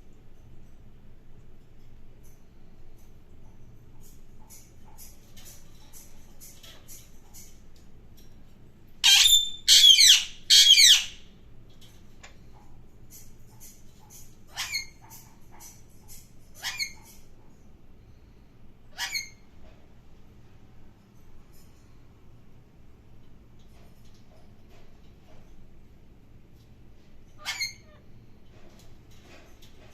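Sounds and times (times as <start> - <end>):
parakeet screeching: 9.0 - 11.2, 14.5 - 15.1, 16.6 - 17.0, 18.9 - 19.4, 27.4 - 28.0.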